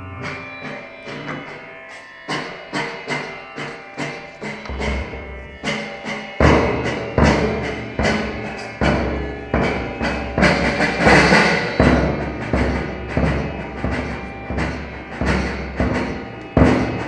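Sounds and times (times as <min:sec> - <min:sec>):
tabla played in rapid strokes: 0:04.6 - 0:17.0
deep resonant bass drum notes: 0:04.7 - 0:10.6.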